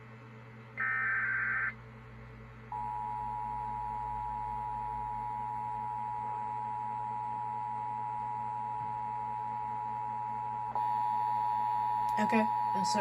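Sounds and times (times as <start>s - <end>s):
steady two-tone alert beep: 10.8s - 13.0s.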